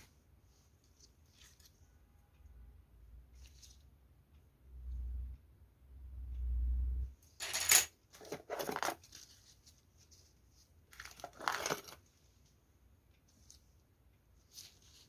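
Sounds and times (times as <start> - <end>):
packaging crinkling and rustling: 10.9 - 12.0
packaging handling rumble: 11.0 - 12.0.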